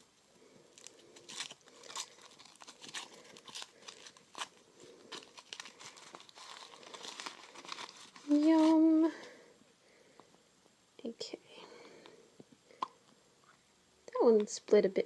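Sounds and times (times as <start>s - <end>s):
foil wrapper crinkling: 0.8s - 9.0s.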